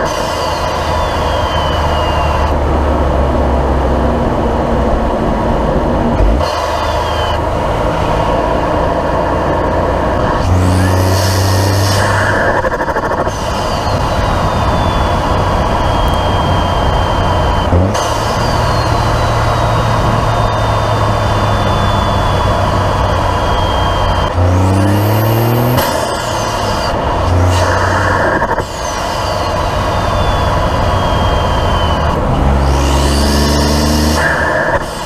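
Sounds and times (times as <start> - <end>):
turbo whistle: 0.0 - 2.6, 6.4 - 7.4, 10.2 - 35.0
car engine drone: 0.0 - 35.0.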